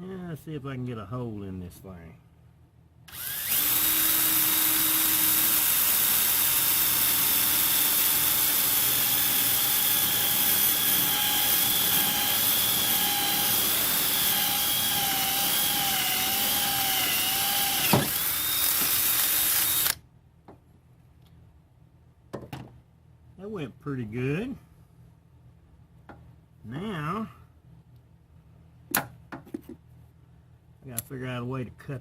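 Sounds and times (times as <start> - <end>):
electric drill whining: 3.1 - 20.0.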